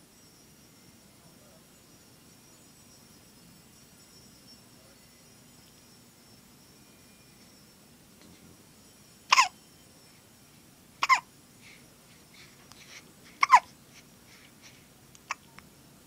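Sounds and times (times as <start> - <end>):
girl hiccuping: 9.3 - 9.5, 11.0 - 11.3.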